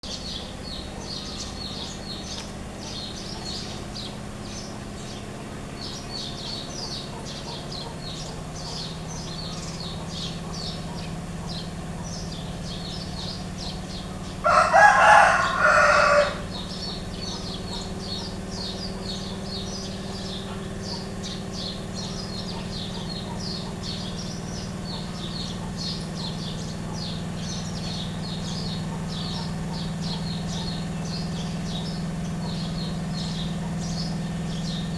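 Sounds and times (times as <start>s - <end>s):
rooster crowing: 14.4s - 17.8s.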